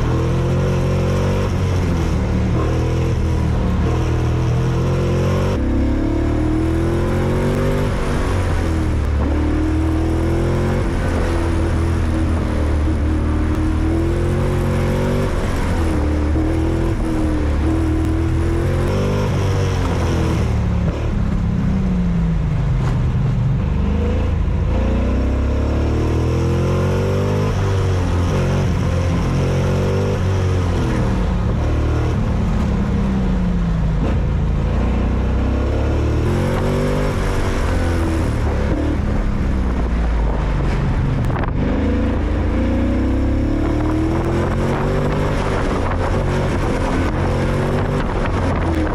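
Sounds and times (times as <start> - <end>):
road noise: 0.0 - 48.9
wind noise: 0.0 - 48.9
race car engine revving: 33.6 - 48.9.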